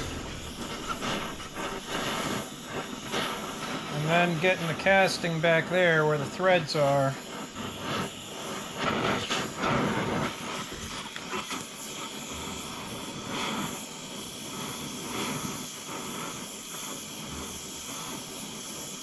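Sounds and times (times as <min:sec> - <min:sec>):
knocks: 0:00.0 - 0:02.3
torch flame hissing: 0:00.0 - 0:19.0.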